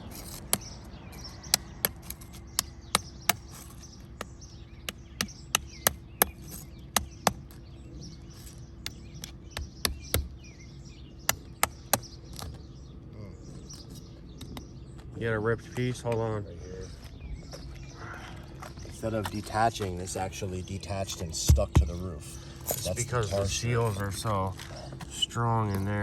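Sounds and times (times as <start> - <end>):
birds chirping: 0.0 - 26.0
metal pry tool clicking on shingles: 0.1 - 7.6.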